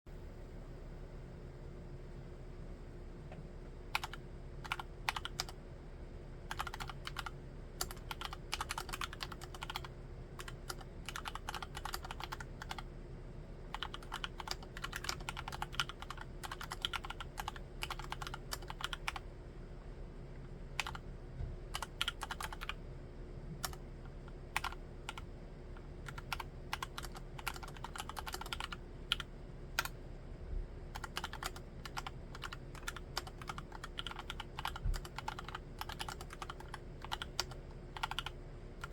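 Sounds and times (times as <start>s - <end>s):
mechanical keyboard typing: 3.9s - 5.6s, 6.5s - 12.8s, 13.7s - 19.2s, 20.8s - 21.0s, 21.7s - 22.8s, 24.5s - 25.3s, 26.1s - 30.0s, 31.0s - 38.9s.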